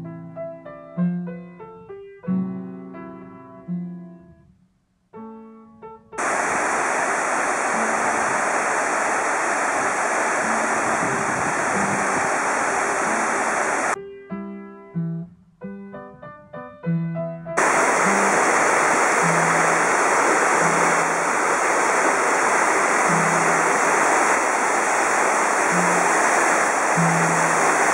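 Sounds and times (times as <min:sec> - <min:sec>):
waterfall rushing: 0:06.2 - 0:14.0, 0:17.6 - 0:27.9.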